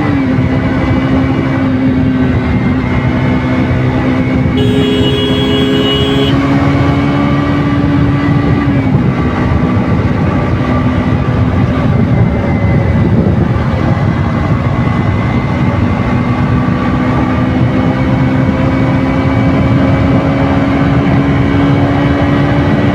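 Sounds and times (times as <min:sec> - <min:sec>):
wind and road noise: 0:00.0 - 0:22.9
motorcycle engine running: 0:04.4 - 0:08.1
short high tone: 0:04.6 - 0:06.5.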